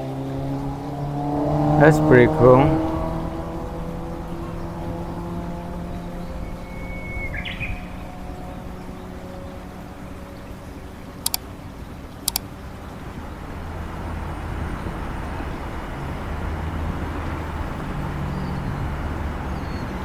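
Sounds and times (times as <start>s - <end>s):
road traffic rumble: 0.0s - 20.0s
vehicle hum approaching: 0.0s - 20.0s
sharp double clicks: 11.2s - 11.4s.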